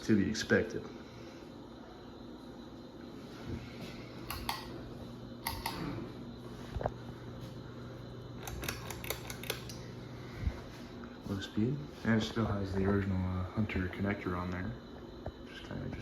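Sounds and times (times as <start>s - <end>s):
ceiling fan motor hum: 0.0s - 16.0s
light clicks: 4.2s - 4.7s, 5.4s - 5.9s.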